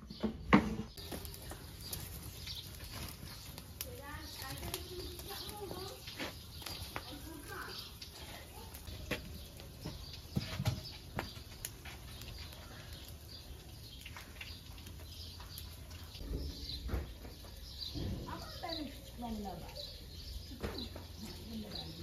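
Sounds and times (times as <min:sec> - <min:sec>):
birds chirping faintly: 0:00.0 - 0:22.0
sharp knocks and clatters: 0:16.2 - 0:18.5.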